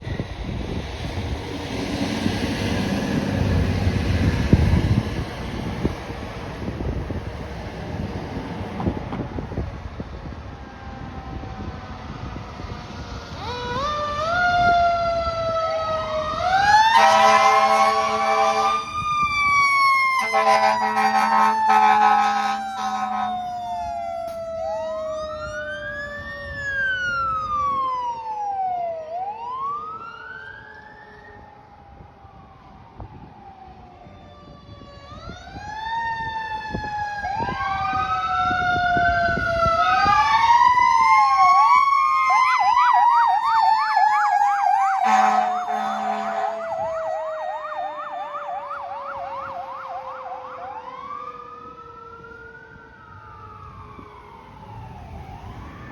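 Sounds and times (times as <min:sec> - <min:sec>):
fire truck sirens wailing: 0:00.0 - 0:55.9
air horn blasts: 0:16.9 - 0:18.9, 0:20.2 - 0:23.6, 0:44.7 - 0:47.2.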